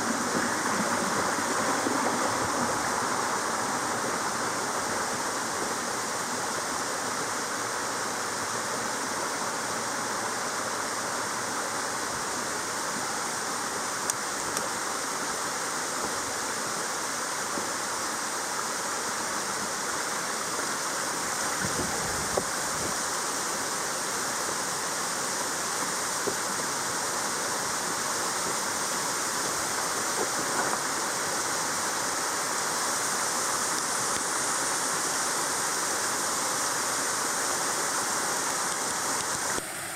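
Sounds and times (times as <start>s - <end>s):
rush of flowing water: 0.0s - 39.9s.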